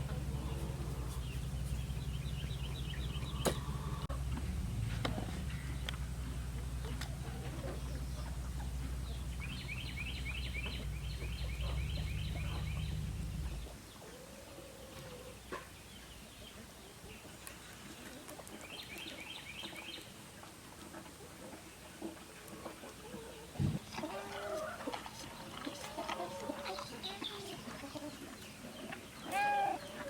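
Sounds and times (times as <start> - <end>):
low mechanical drone: 0.0 - 13.8.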